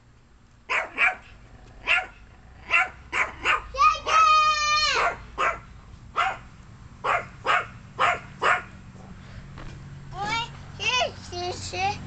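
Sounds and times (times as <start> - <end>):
dog barking: 0.7 - 3.7, 4.9 - 9.2.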